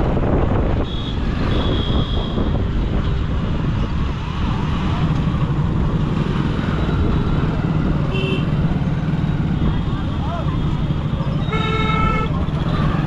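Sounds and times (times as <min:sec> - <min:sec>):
wind rumble: 0:00.0 - 0:10.0
road traffic: 0:00.0 - 0:13.0.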